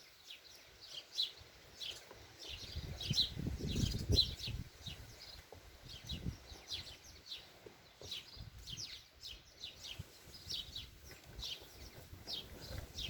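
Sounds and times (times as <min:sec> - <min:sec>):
small birds chirping: 0:00.0 - 0:13.0
wind buffeting microphone: 0:02.4 - 0:07.3, 0:08.2 - 0:13.0.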